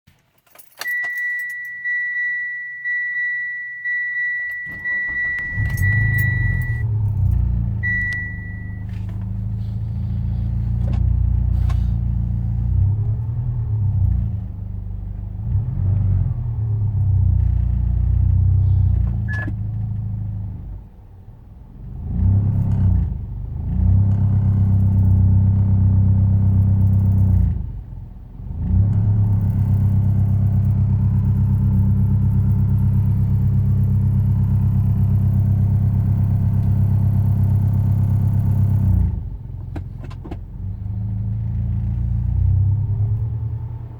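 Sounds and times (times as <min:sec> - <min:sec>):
car warning chime beeping: 0:00.8 - 0:06.9, 0:07.8 - 0:08.9, 0:19.2 - 0:19.6
car engine running unevenly: 0:04.5 - 0:43.4.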